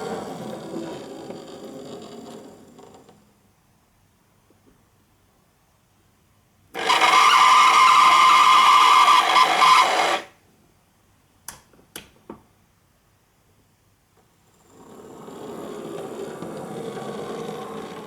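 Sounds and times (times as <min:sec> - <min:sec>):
point motor whining: 0:06.8 - 0:10.3.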